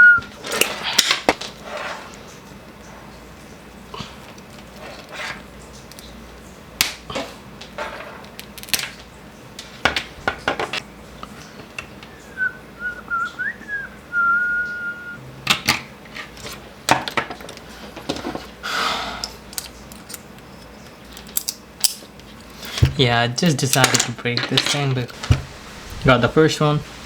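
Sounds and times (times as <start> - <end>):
wavering whistle: 0.0 - 0.4, 12.1 - 15.2
plastic casing cracking apart: 8.3 - 9.1, 21.0 - 23.0.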